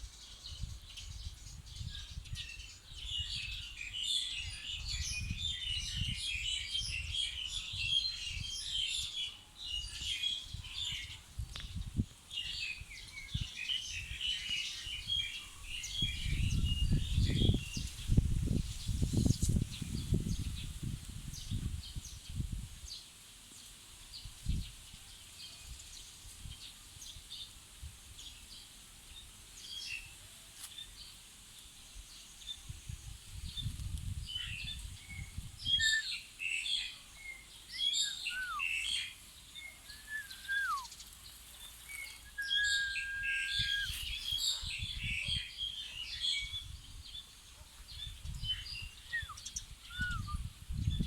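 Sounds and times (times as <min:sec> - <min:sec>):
birds chirping and calling: 0:33.4 - 0:51.0
falling whistles: 0:40.0 - 0:40.9, 0:42.2 - 0:44.0, 0:49.1 - 0:50.4
held level whistle: 0:40.0 - 0:40.9, 0:42.3 - 0:43.9.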